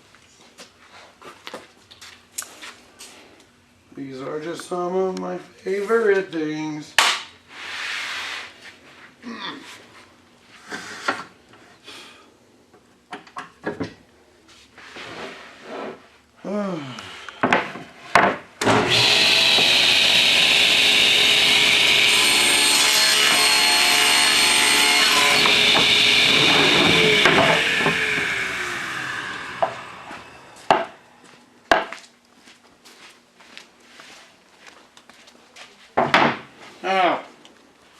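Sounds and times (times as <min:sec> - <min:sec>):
power tool cutting wood: 0:18.6 - 0:31.1.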